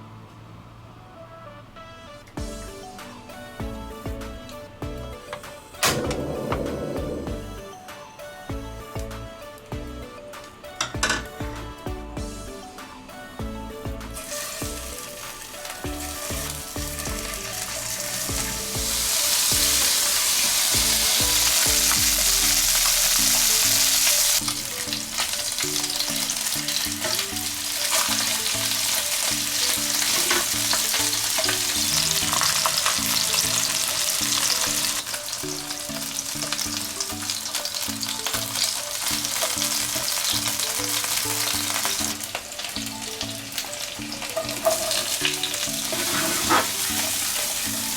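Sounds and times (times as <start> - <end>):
background music: 0.0 - 47.9
food sizzling in a pan: 14.2 - 47.9.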